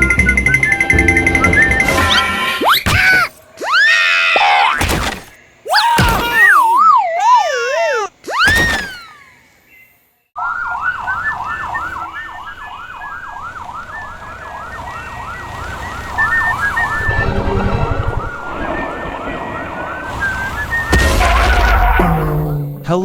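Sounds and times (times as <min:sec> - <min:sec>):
electronic yelp siren wailing: 0:10.4 - 0:22.6.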